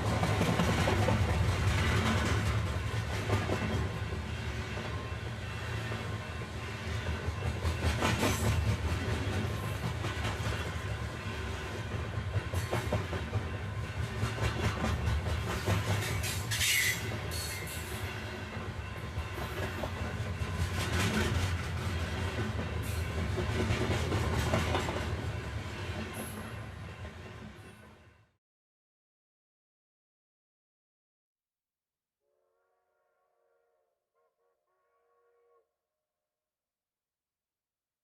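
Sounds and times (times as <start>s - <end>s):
train rumbling on rails: 0.0s - 28.3s.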